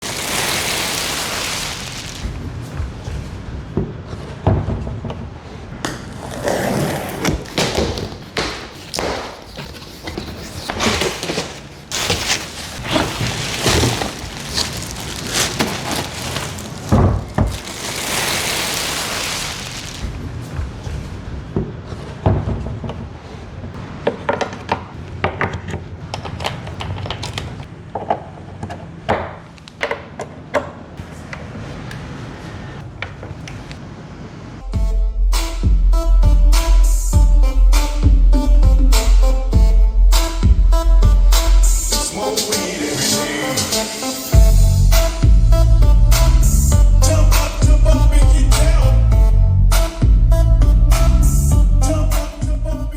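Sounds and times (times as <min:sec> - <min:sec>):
cardboard rustling and scraping: 0:00.0 - 0:03.4, 0:05.8 - 0:21.0
boxes thumping and tapping: 0:05.8 - 0:18.5.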